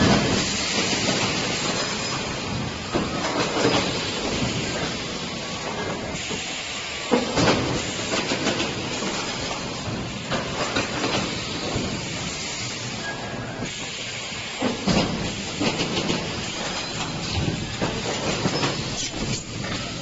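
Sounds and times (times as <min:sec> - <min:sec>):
welding machine hissing: 0:00.0 - 0:20.0.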